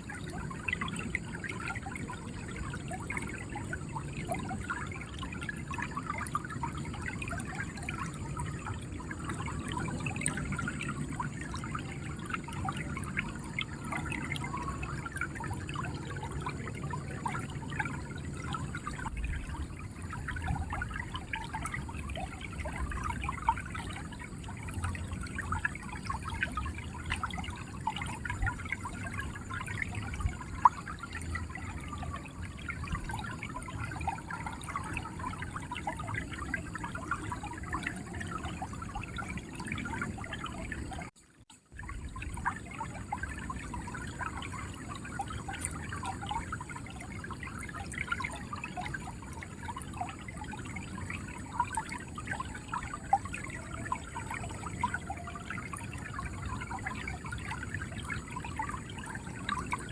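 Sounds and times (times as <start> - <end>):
shallow river flowing: 0.0 - 59.9
small water splashes: 0.0 - 59.9.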